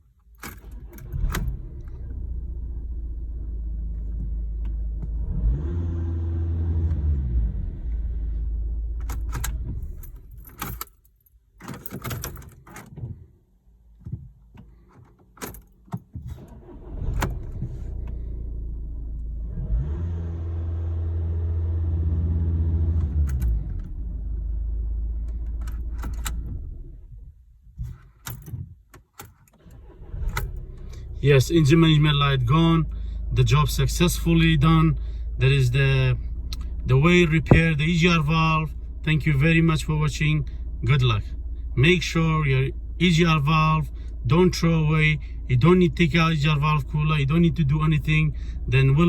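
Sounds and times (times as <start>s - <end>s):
car engine running: 0.7s - 10.7s, 16.4s - 27.3s, 29.6s - 49.0s
keys jangling: 9.1s - 12.9s.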